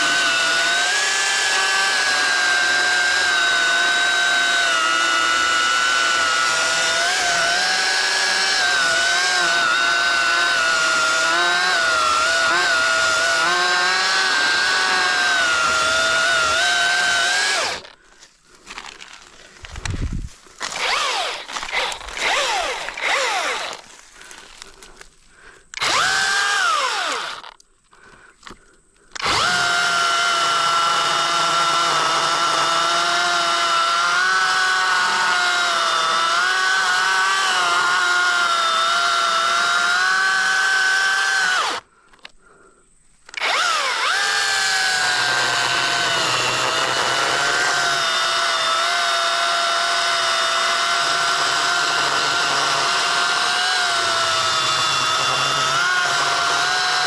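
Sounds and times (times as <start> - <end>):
electric chainsaw cutting wood: 0.0 - 18.0, 20.6 - 24.8, 25.8 - 27.6, 29.2 - 41.8, 43.3 - 57.0.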